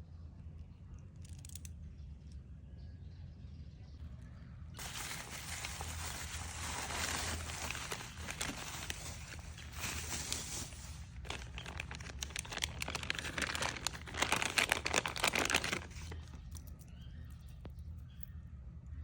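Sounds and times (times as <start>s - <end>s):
packaging crinkling: 4.8s - 16.9s.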